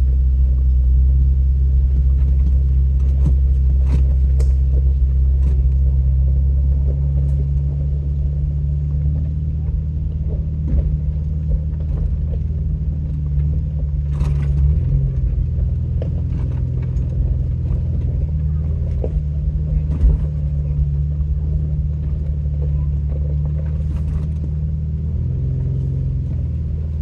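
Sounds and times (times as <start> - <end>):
vehicle engine drone in cabin: 0.0 - 27.0.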